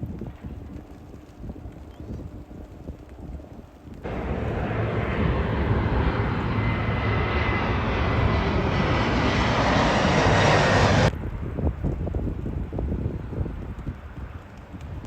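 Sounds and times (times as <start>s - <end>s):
jet airliner passing overhead: 4.0s - 11.5s.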